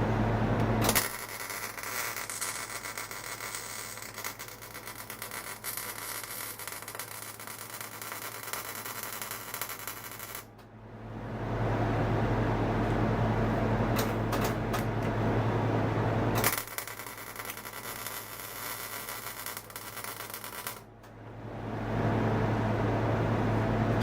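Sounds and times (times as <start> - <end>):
steady low hum: 0.0 - 24.0
welding arc crackling and sizzling: 0.6 - 10.5, 16.4 - 20.9.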